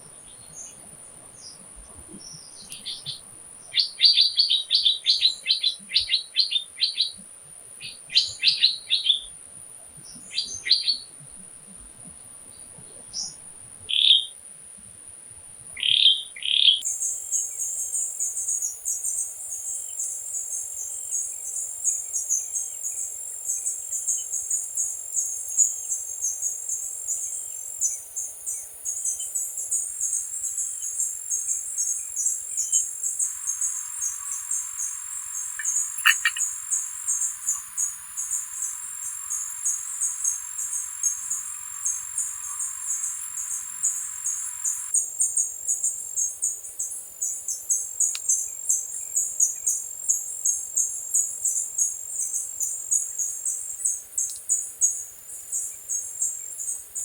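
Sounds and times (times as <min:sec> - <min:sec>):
crickets chorus: 0:00.0 - 0:11.2, 0:13.0 - 0:14.3, 0:15.7 - 0:57.0
steady high insect whine: 0:16.8 - 0:56.8
faint regular chirps: 0:30.8 - 0:44.9
birds chirping: 0:32.6 - 0:44.9.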